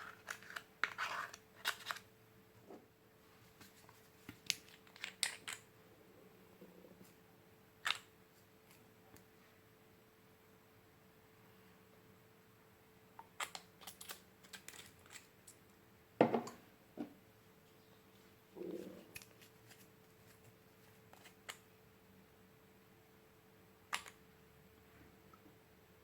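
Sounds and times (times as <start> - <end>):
small clicks and taps of objects: 23.9 - 24.2.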